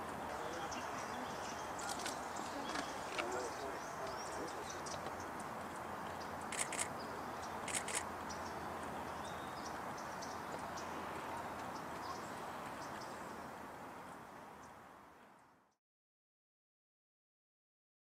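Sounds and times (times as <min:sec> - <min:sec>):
outdoor background noise: 0:00.0 - 0:15.8
sharp clicks: 0:06.5 - 0:06.9, 0:07.6 - 0:08.0.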